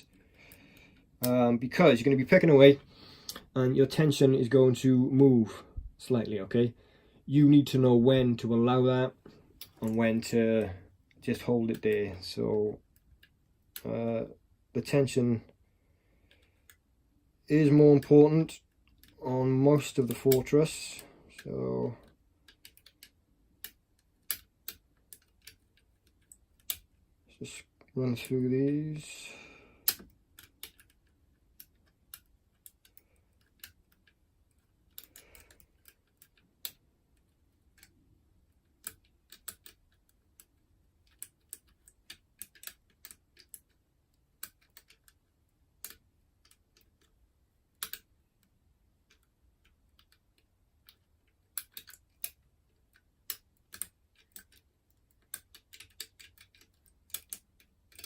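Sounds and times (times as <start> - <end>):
metallic clicks of lock picking: 20.0 - 26.9, 29.8 - 36.8, 38.7 - 43.8, 44.4 - 45.2, 45.8 - 47.1, 47.7 - 48.1, 49.1 - 58.0.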